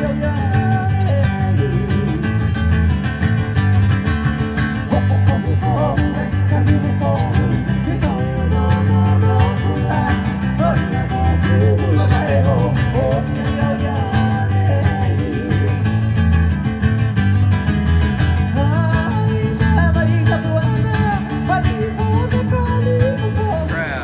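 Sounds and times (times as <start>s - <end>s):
person singing: 0.0s - 2.4s, 4.9s - 15.9s, 18.5s - 24.0s
bass notes: 0.0s - 24.0s
strummed guitar: 0.0s - 24.0s.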